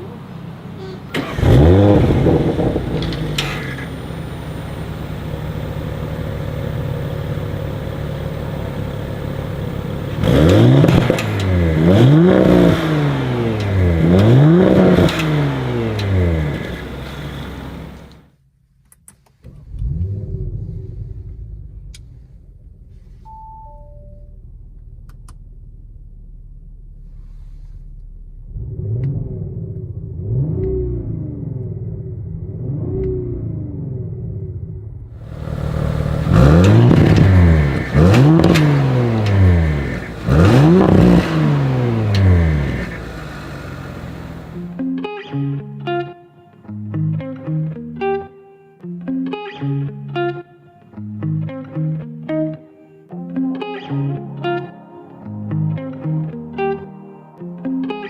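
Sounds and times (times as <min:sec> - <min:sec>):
car engine idling: 0:00.0 - 0:18.3, 0:19.4 - 0:44.9
car engine starting and revving: 0:00.0 - 0:18.3, 0:19.4 - 0:45.0
short chime tones: 0:23.3 - 0:24.4.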